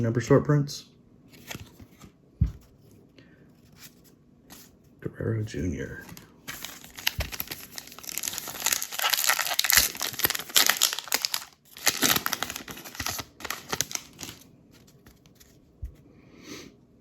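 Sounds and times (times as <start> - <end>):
plastic wrapper tearing and crinkling: 6.0 - 14.5.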